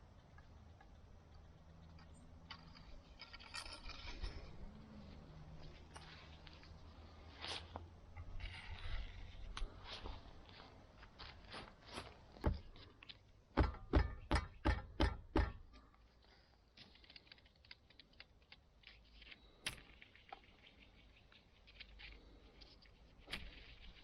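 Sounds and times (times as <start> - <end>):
sharp knocks: 13.5 - 15.7
light irregular clicks and crackles: 16.2 - 24.0.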